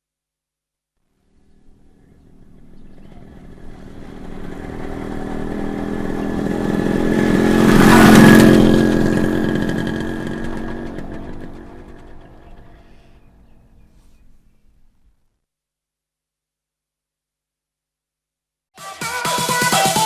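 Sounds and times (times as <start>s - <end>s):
motorcycle passing by: 1.2s - 14.9s.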